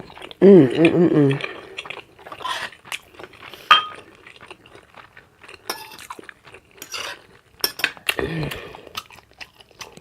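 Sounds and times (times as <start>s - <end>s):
open-mouth chewing and lip smacking: 0.0s - 10.0s
utensil clinking on a plate: 3.7s - 4.0s.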